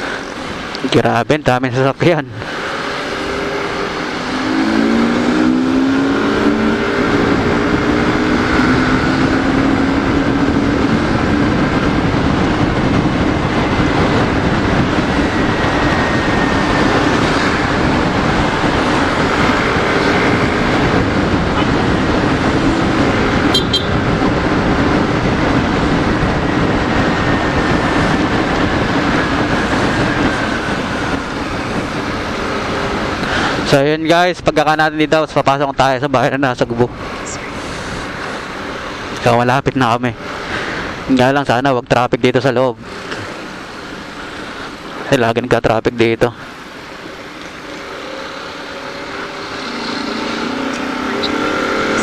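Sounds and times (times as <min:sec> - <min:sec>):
wind rushing over microphone: 0:00.0 - 0:52.0
motorcycle engine: 0:02.4 - 0:33.7, 0:46.4 - 0:52.0.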